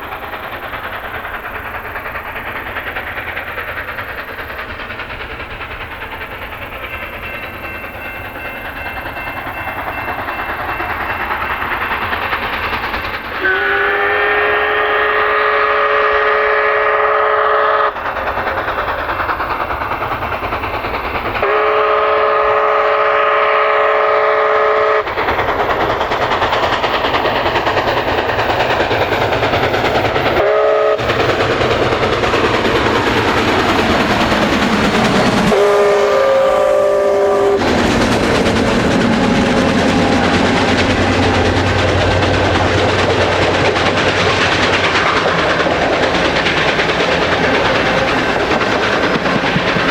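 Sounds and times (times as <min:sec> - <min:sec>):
train rumble: 0:00.0 - 0:49.9
steam whistle blasts: 0:13.4 - 0:18.0, 0:21.4 - 0:25.1, 0:30.4 - 0:31.1, 0:35.5 - 0:37.8.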